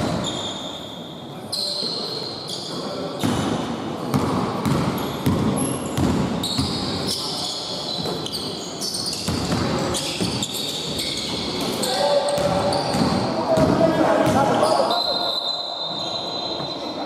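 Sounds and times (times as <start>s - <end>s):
shoe squeaks: 0.0s - 3.4s, 4.9s - 13.3s, 14.4s - 17.0s
basketball bouncing: 4.1s - 6.8s.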